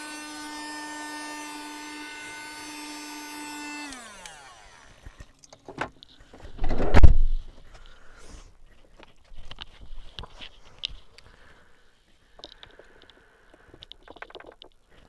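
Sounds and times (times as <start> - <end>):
handheld vacuum cleaner whining: 0.0 - 5.4.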